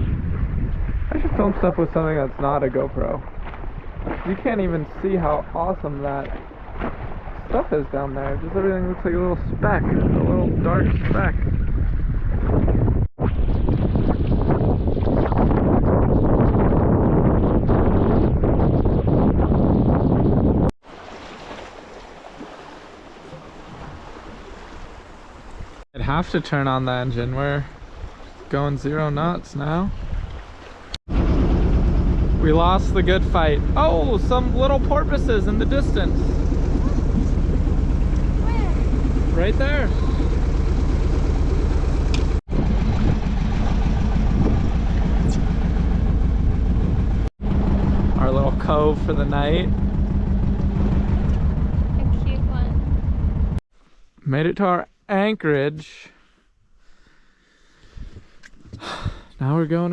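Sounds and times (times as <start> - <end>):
wind buffeting microphone: 0.0 - 20.7, 27.1 - 53.6, 57.9 - 59.4
boat engine humming: 27.7 - 53.6.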